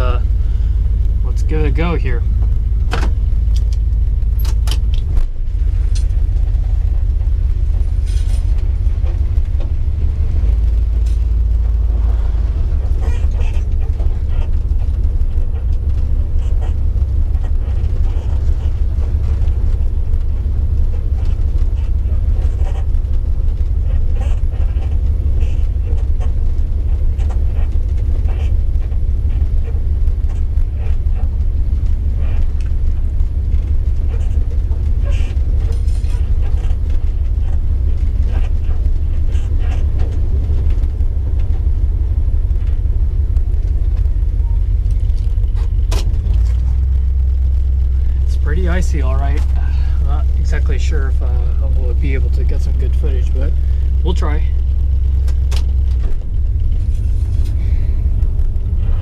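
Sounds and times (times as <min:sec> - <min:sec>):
car engine low rumble: 0:00.0 - 0:59.0
sharp clicks: 0:02.5 - 0:05.3.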